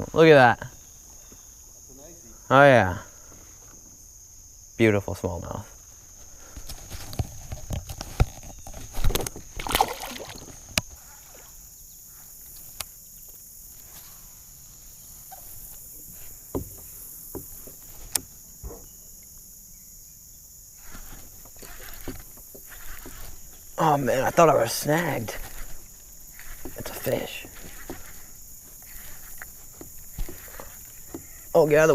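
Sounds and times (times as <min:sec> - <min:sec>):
crickets chirring: 0:00.0 - 0:31.9
knocks and clatter on kayak: 0:06.6 - 0:11.0, 0:16.4 - 0:19.0, 0:20.9 - 0:31.9
water sloshing: 0:08.3 - 0:11.7, 0:20.8 - 0:31.9.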